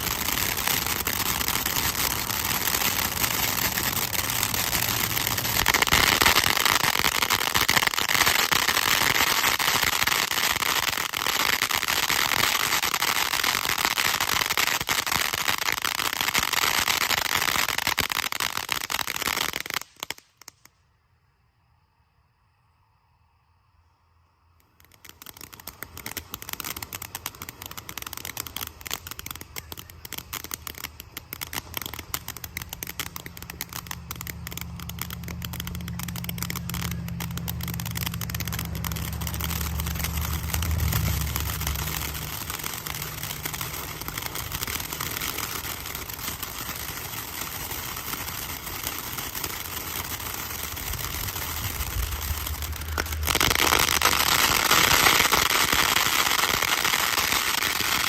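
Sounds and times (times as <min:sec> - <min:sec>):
crackling fountain firework: 0:00.0 - 0:58.0
low rumble: 0:33.3 - 0:43.6, 0:50.8 - 0:53.3.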